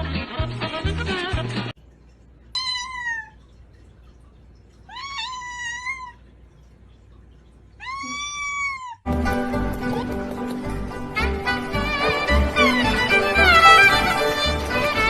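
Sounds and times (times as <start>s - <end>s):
music: 0.0s - 1.8s, 9.1s - 15.0s
cat meowing: 2.6s - 3.4s, 4.9s - 6.2s, 7.8s - 9.1s.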